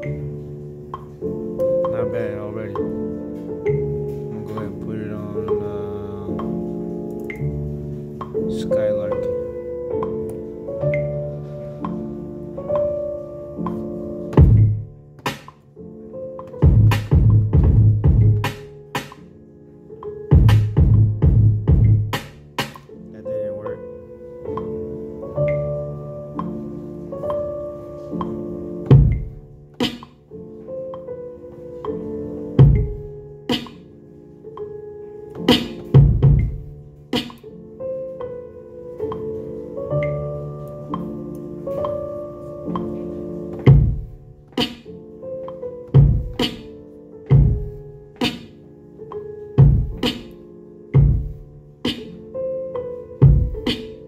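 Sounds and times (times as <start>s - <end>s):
hip-hop beat: 0.0s - 54.0s
sampled keyboard chords: 0.0s - 54.0s
heavy kick drum: 14.4s - 14.9s, 16.6s - 18.5s, 20.3s - 22.2s, 28.9s - 29.4s, 32.6s - 33.0s, 36.0s - 36.6s, 43.7s - 44.1s, 46.0s - 46.4s, 47.3s - 47.7s, 49.6s - 50.0s, 51.0s - 51.4s, 53.2s - 53.6s
sharp snare: 15.3s - 15.6s, 22.2s - 22.9s, 29.8s - 30.2s, 35.5s - 35.9s, 37.2s - 37.5s, 46.4s - 46.7s, 48.2s - 48.6s, 50.0s - 50.4s
snare hit: 15.3s - 15.6s, 29.8s - 30.2s, 48.2s - 48.5s.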